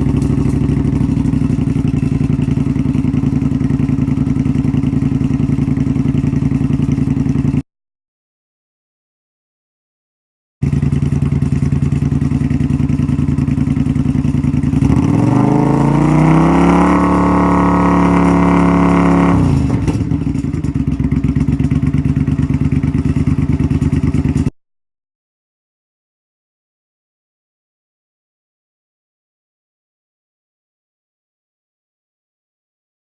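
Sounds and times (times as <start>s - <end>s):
motorcycle engine idling and revving: 0.0s - 7.6s, 10.6s - 24.5s.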